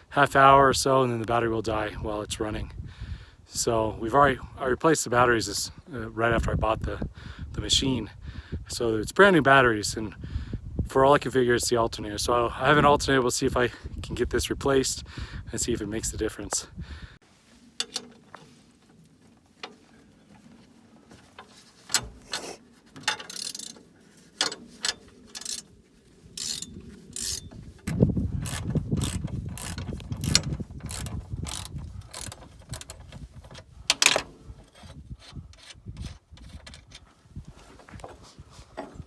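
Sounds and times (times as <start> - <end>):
hand tools clanking: 17.5 - 25.8, 26.4 - 39.0
ratchet wrench clicking: 23.1 - 23.8, 24.4 - 25.7, 26.4 - 27.4, 28.4 - 33.0.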